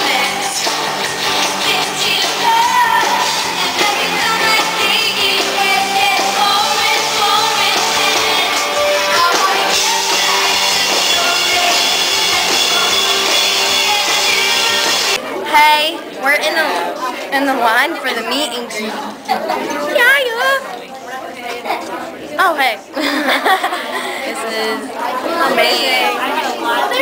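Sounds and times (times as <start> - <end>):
drum kit: 0.0 - 15.2
pop-rock song with singer: 0.0 - 15.2.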